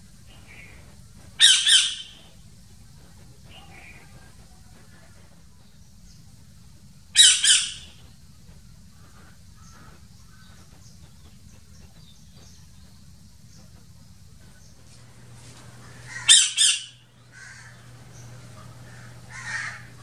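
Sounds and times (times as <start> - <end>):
parrot squawking: 1.4 - 2.3, 7.2 - 8.0, 15.8 - 17.8, 18.8 - 20.0.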